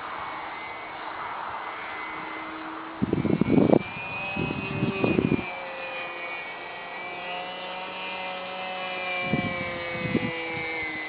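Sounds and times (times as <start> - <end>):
model plane motor whining: 0.0 - 11.0
wind rumble on microphone: 2.6 - 5.7, 9.1 - 11.0.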